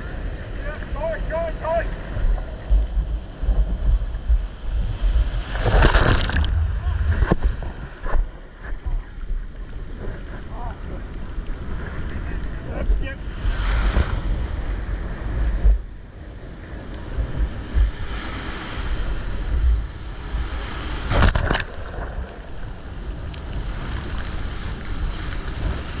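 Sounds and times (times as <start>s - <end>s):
waves washing: 0.0s - 26.0s
wind buffeting microphone: 0.0s - 26.0s
sharp splash or knock: 5.5s - 6.6s, 21.1s - 22.1s.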